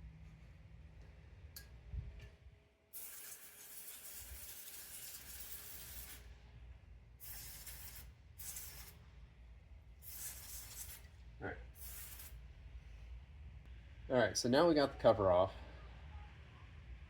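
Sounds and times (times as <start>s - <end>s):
aerosol spray bursts: 3.0s - 6.2s, 7.2s - 9.0s, 10.0s - 11.1s, 11.8s - 12.4s.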